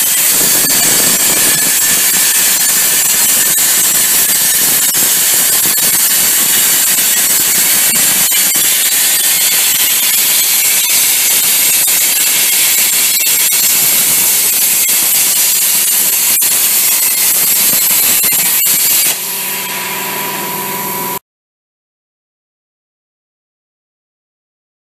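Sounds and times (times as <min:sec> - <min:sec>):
sharp crackles: 0:00.0 - 0:19.3
plasma torch cutting metal: 0:00.0 - 0:21.2.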